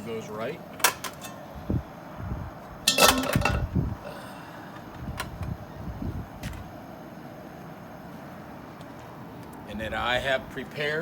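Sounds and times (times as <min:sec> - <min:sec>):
metallic clatter: 0:02.9 - 0:03.7.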